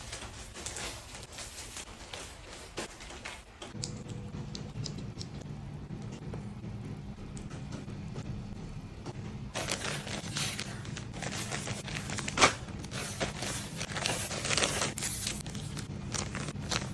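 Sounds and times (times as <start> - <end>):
packaging crinkling and rustling: 0.0 - 3.5, 9.6 - 16.9
steady low hum: 0.0 - 16.9.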